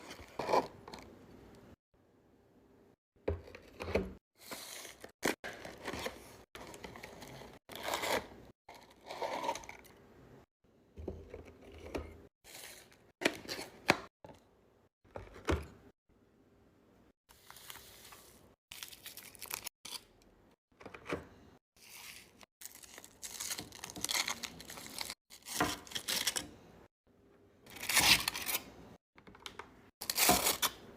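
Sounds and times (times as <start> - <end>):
packaging torn and crinkled: 18.7 - 20.1, 22.6 - 26.4.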